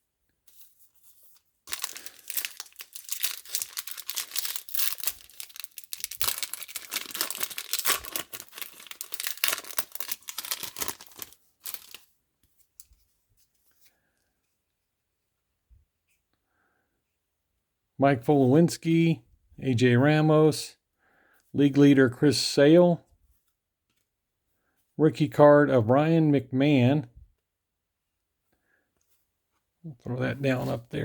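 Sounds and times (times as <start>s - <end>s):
foil wrapper tearing and crinkling: 1.7s - 12.0s.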